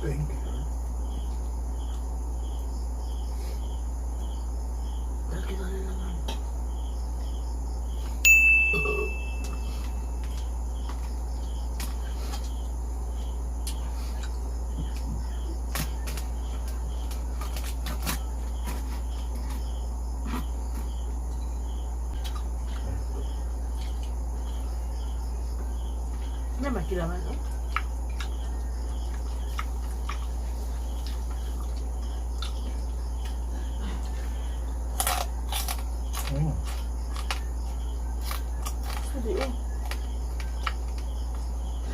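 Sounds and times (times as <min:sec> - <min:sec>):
crickets chirping: 0:00.0 - 0:41.9
low steady hum: 0:00.0 - 0:41.9
tableware clink: 0:08.3 - 0:09.6.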